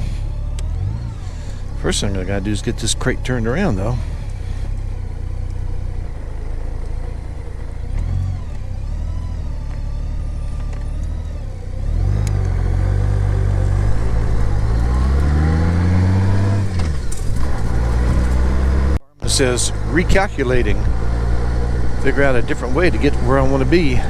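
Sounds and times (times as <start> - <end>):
motorcycle engine: 0.0 - 24.0.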